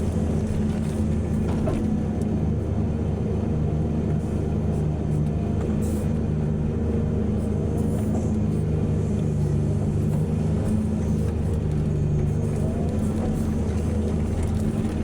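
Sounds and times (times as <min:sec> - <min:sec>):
heavy diesel engine humming: 0:00.0 - 0:15.0.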